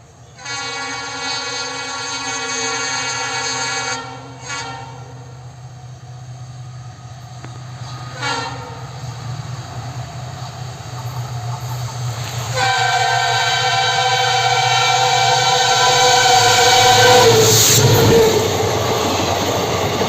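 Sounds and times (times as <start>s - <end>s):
locomotive engine drone: 0.0s - 20.0s
locomotive horn blast: 0.3s - 5.4s, 8.1s - 8.9s, 12.5s - 18.6s.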